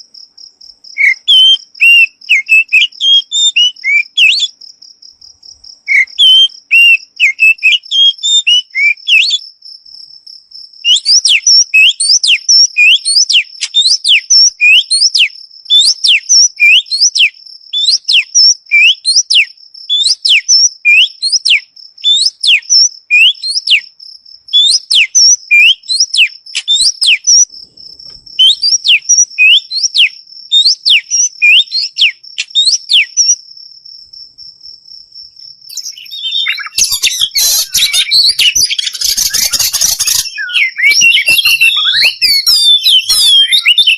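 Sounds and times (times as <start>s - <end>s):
insect trill: 0.0s - 43.9s
bird chirping: 0.8s - 43.9s
bird whistling sweeping notes: 35.7s - 43.9s.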